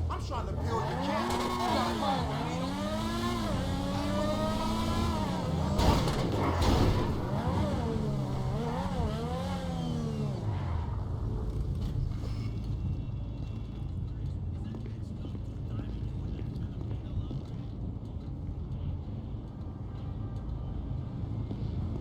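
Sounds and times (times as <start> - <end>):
racing car engine revving: 0.2 - 12.0.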